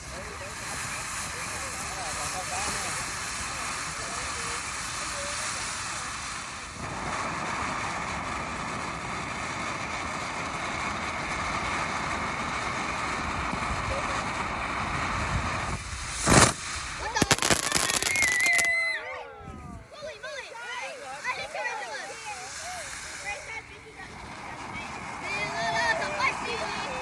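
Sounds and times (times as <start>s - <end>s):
firework hissing: 0.0s - 27.0s
crackling pops: 6.3s - 18.8s
loud firework bang: 9.9s - 18.7s.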